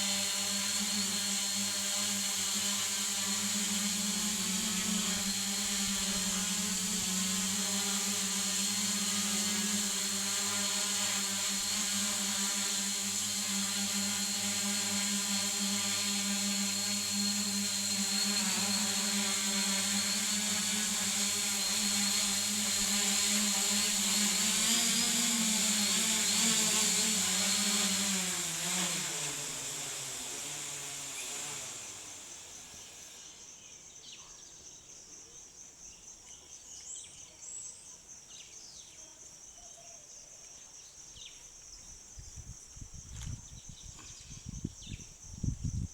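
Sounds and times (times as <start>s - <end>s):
drone motors humming: 0.0s - 33.4s.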